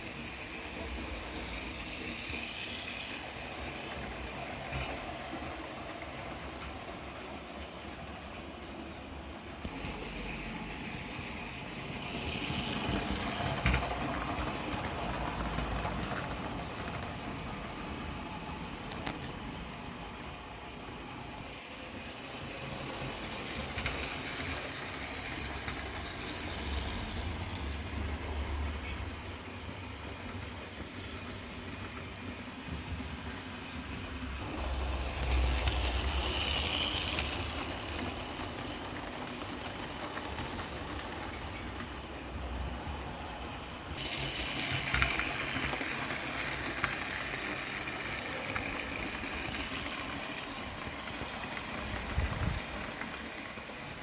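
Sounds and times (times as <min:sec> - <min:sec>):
whirr of small electric motors: 0:00.0 - 0:07.0, 0:21.4 - 0:28.0, 0:34.4 - 0:54.0
model train wheels rattling on track: 0:00.0 - 0:54.0.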